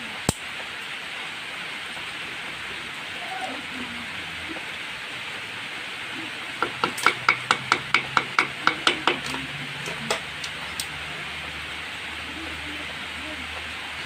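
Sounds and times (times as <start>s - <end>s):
hammer tapping on metal: 6.6s - 10.2s.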